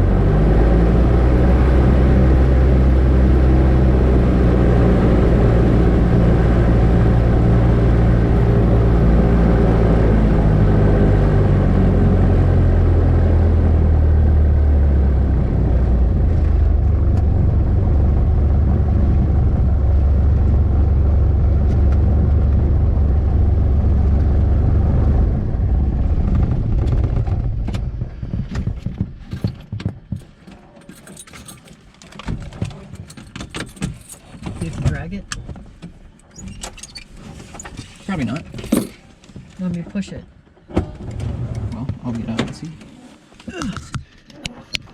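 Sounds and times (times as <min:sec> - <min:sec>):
propeller plane engine running: 0:00.0 - 0:30.3.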